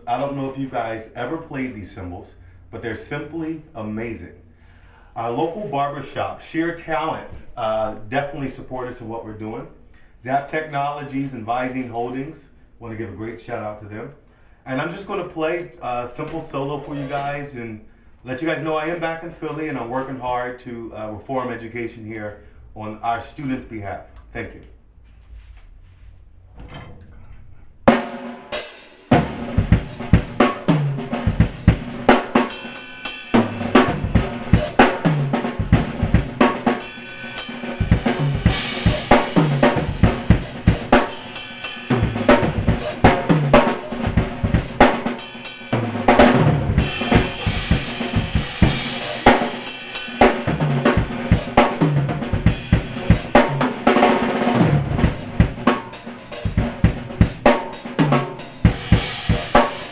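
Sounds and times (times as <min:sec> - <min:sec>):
drum kit solo: 0:16.2 - 0:17.6, 0:27.9 - 0:59.9
ringing cymbals: 0:29.8 - 0:45.8, 0:46.8 - 0:51.7.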